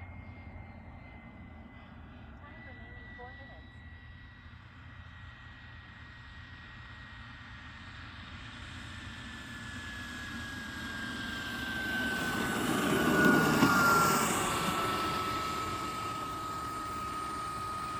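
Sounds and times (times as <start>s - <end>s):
model jet turbine whine: 0.0s - 17.9s.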